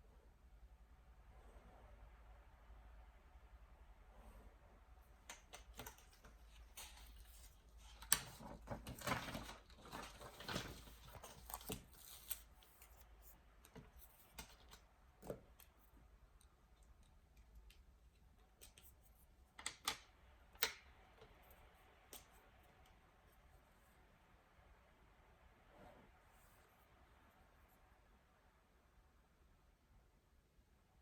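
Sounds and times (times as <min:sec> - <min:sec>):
paper rustling: 0:05.5 - 0:15.4.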